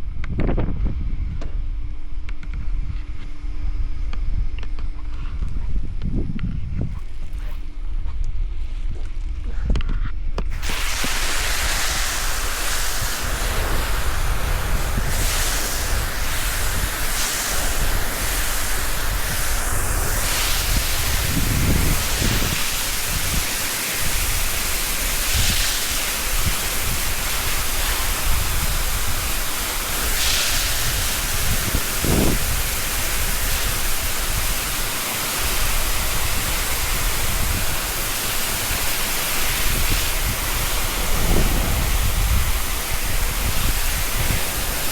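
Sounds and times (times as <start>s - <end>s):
hose spraying water onto concrete: 10.4s - 44.9s.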